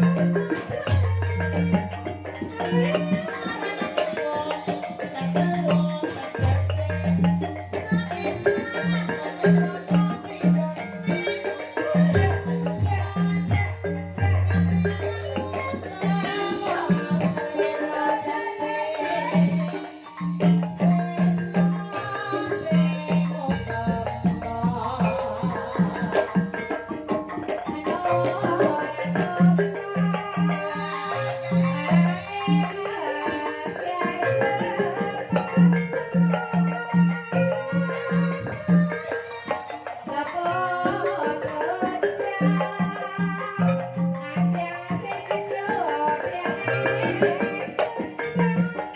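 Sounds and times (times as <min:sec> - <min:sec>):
gamelan mallet percussion: 0:00.0 - 0:48.9
rattling percussion: 0:00.0 - 0:48.9
wavering melody line: 0:00.0 - 0:48.9.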